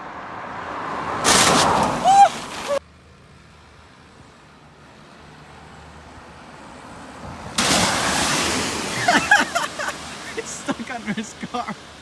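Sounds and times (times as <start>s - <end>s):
car engine rumble: 0.0s - 4.4s.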